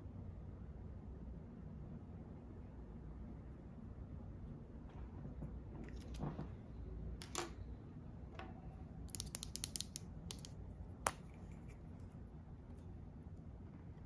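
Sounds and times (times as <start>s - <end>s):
makeup cases clicking and tapping: 9.1s - 10.5s.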